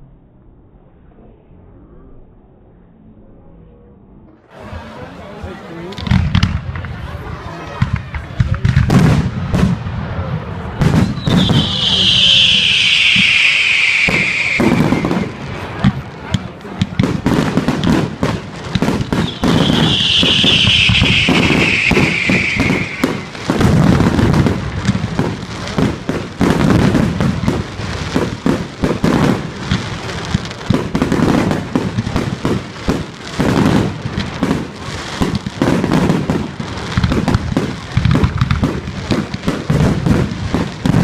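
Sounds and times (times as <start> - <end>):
fireworks banging and crackling: 4.5 - 41.0
descending firework whistle: 10.8 - 15.8, 19.1 - 24.4.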